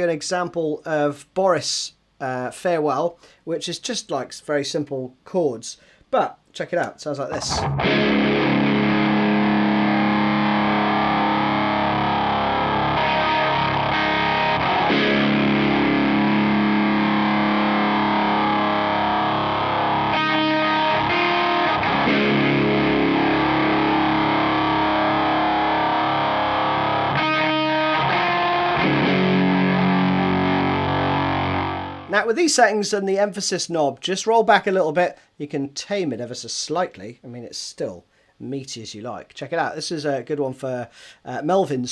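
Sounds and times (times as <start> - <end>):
distorted electric guitar chords: 7.3 - 32.1.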